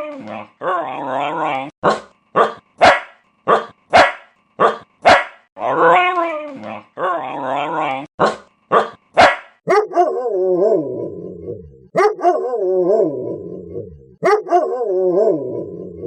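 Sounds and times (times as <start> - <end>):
dog barking: 1.9 - 5.4, 8.2 - 10.3, 11.9 - 12.6, 14.2 - 14.9.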